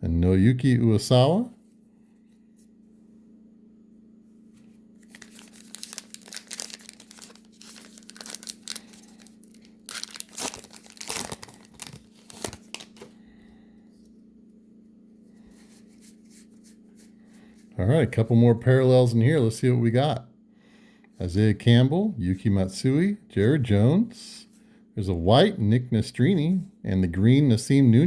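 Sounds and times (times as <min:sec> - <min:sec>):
steady low hum: 0:00.0 - 0:28.0
wrapper tearing and crinkling: 0:05.0 - 0:13.1.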